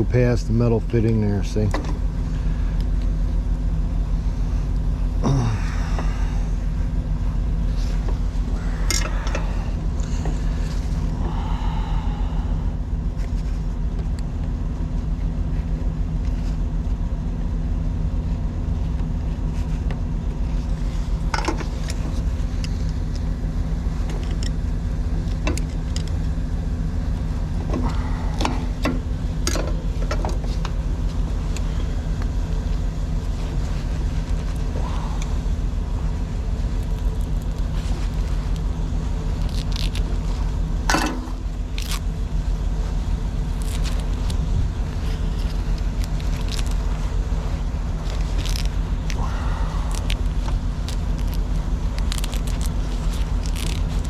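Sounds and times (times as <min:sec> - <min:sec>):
truck engine idling: 0:00.0 - 0:54.0
tape being cut and peeled: 0:36.6 - 0:40.6, 0:41.3 - 0:42.1, 0:43.4 - 0:54.0.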